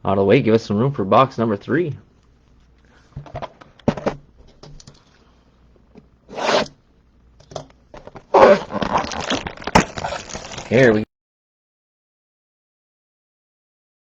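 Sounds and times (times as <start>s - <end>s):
packaging tearing and rustling: 8.0s - 11.0s.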